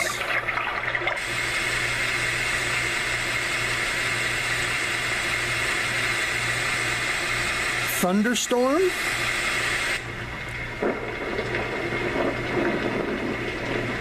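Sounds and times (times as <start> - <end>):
white noise hiss from small speaker: 1.2 - 14.0
low hum: 9.0 - 14.0.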